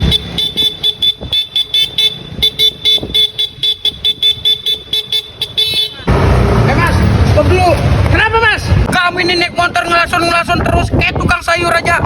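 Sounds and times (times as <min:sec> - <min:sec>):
motorcycle horn beeping: 0:00.0 - 0:06.2.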